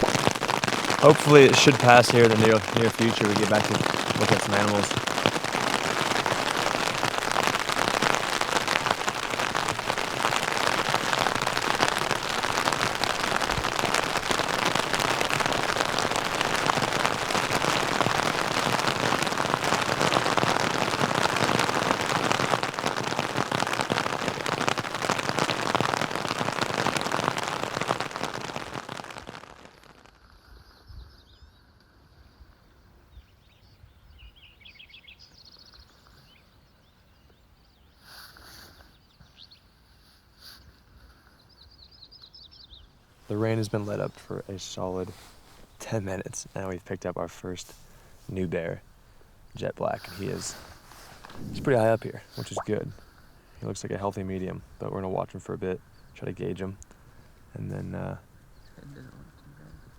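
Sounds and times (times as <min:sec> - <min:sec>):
rain and hail pelting down: 0:00.0 - 0:30.4, 0:43.1 - 0:59.9.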